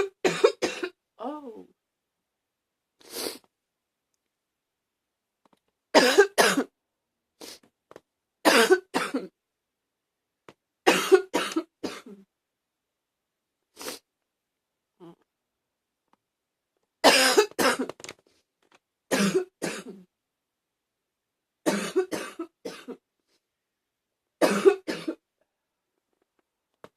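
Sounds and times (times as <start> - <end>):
person coughing: 0.0 - 1.0, 6.0 - 6.7, 8.5 - 9.3, 10.9 - 12.2, 17.0 - 18.0, 19.1 - 20.0, 21.7 - 23.0, 24.4 - 25.2.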